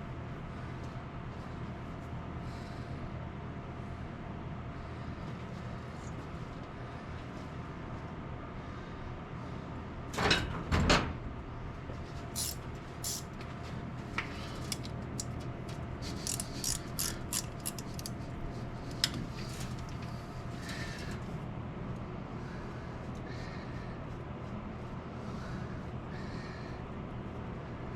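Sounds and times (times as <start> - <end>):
ratchet wrench clicking: 12.4 - 13.3, 14.6 - 15.4, 16.0 - 18.2.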